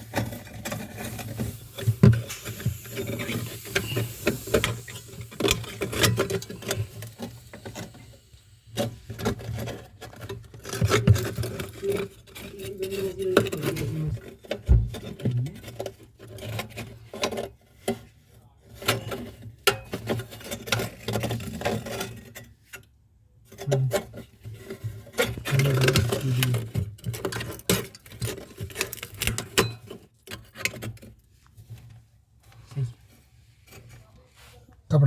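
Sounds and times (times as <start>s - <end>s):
clicking and knocking on metal parts: 23.5s - 31.2s.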